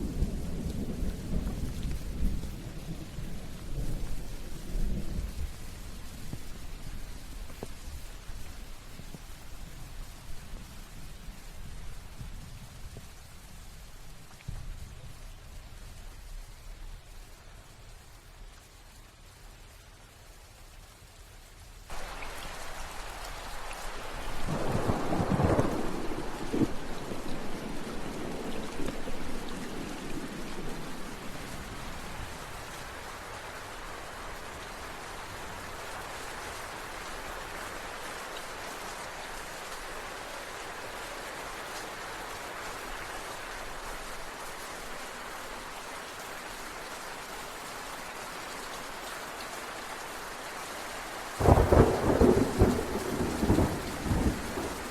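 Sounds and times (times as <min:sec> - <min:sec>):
steady rain: 0:00.0 - 0:54.9
thunder rolling: 0:23.8 - 0:32.7, 0:51.4 - 0:54.9.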